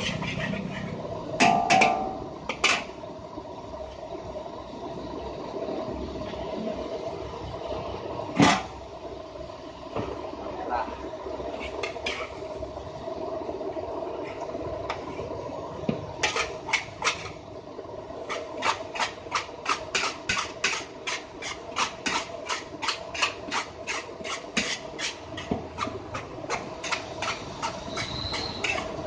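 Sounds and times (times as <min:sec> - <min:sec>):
metal spatula scraping a wok: 0:00.0 - 0:02.9, 0:11.5 - 0:12.4, 0:16.2 - 0:17.4, 0:18.2 - 0:29.0.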